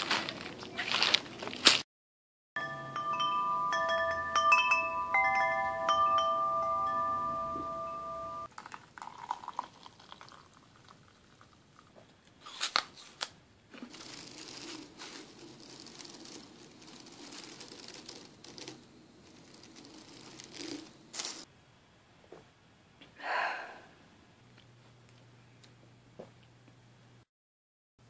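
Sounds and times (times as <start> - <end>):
soft crunching and crinkling: 0.0 - 1.8, 11.0 - 21.5.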